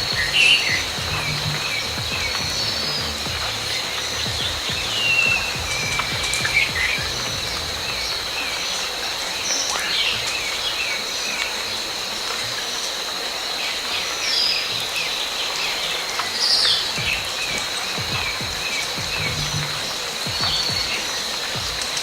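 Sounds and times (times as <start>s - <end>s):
birds chirping: 0.0s - 22.0s
high insect drone: 0.0s - 22.0s.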